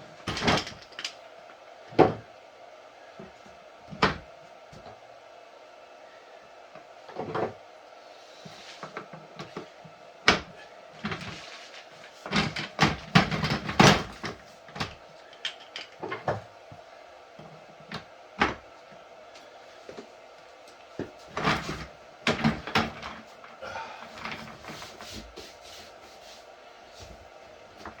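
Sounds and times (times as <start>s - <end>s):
chair casters clicking and clattering: 0.2s - 1.2s, 10.3s - 16.4s, 21.1s - 25.0s.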